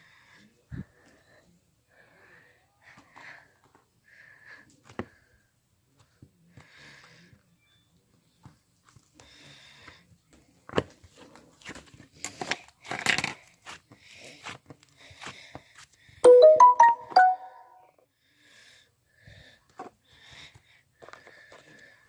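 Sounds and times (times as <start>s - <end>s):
sniffing and breathing: 13.4s - 16.2s
bright pitched notes: 16.2s - 17.8s.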